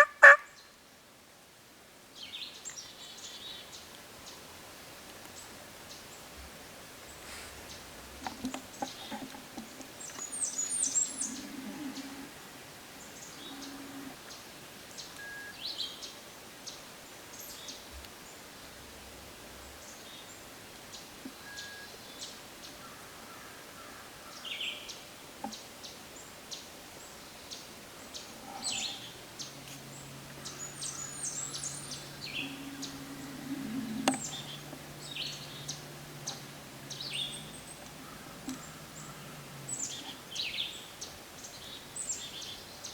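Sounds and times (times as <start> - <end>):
faint low hum: 5.3 - 15.4, 27.7 - 42.1
songbirds chirping and singing: 7.1 - 14.4, 27.4 - 42.9.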